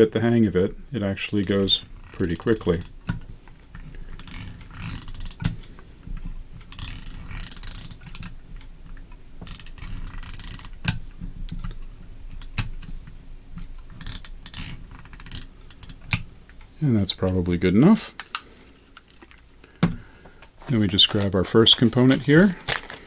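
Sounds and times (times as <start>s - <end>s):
tape runner gears ratcheting: 0.0s - 17.5s
sharp clicks: 18.1s - 23.0s.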